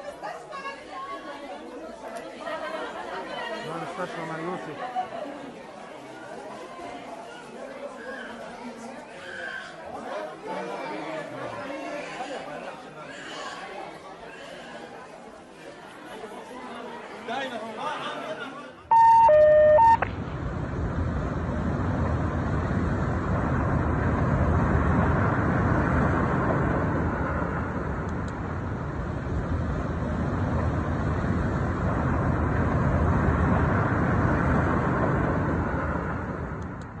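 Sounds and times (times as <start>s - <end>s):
loud electronic beep: 18.9s - 20.1s
steady rumbling: 18.9s - 37.0s.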